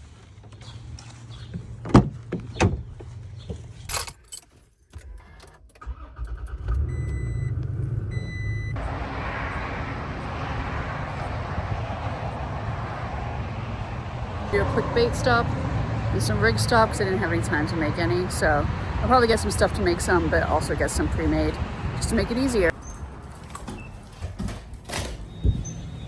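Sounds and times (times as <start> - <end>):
keys jangling: 3.7 - 5.1
truck engine starting: 4.9 - 26.0.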